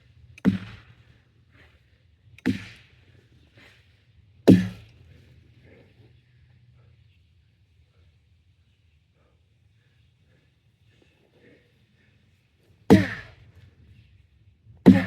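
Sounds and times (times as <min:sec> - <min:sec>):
axe chopping wood: 0:00.5 - 0:00.9, 0:02.5 - 0:02.8, 0:04.5 - 0:04.8, 0:12.9 - 0:13.3.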